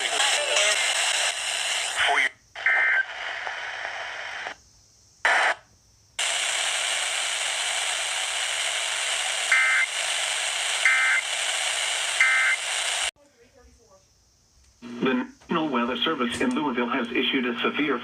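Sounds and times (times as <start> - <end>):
radio static hiss: 0.0 - 4.6, 5.2 - 13.2, 14.8 - 18.0
two-tone warbling data bursts: 12.2 - 12.7.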